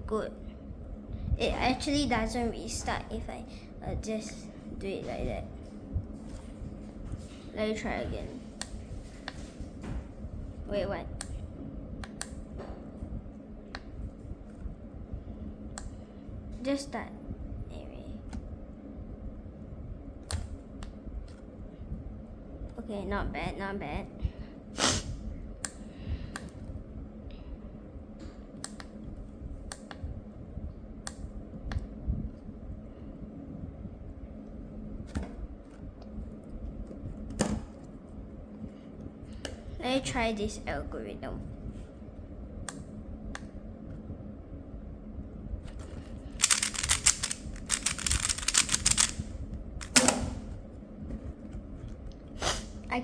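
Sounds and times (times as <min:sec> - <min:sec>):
plastic puzzle rustling: 0:45.8 - 0:50.1
plastic puzzle layers clicking: 0:46.4 - 0:50.3.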